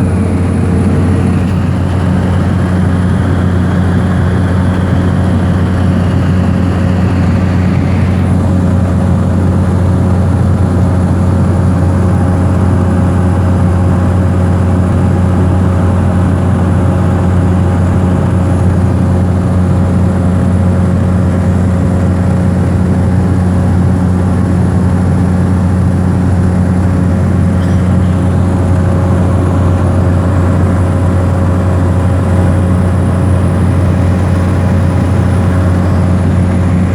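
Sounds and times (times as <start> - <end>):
airliner engine drone in cabin: 0.0 - 36.9
faint steady whines: 0.0 - 36.9.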